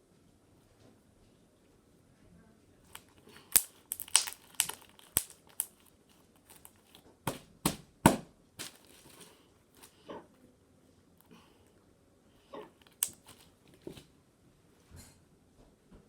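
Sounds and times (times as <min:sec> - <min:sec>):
sharp irregular crackles and clicks: 0:02.9 - 0:07.0.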